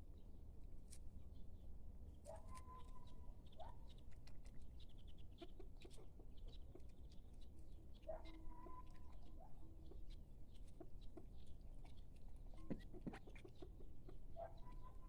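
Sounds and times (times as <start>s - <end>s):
chickens clucking: 4.2s - 15.0s.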